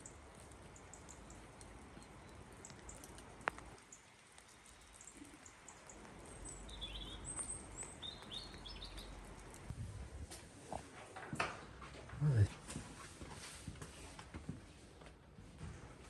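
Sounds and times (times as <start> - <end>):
small bird chirping: 0.0 - 9.7
outdoor background hiss: 0.0 - 16.0.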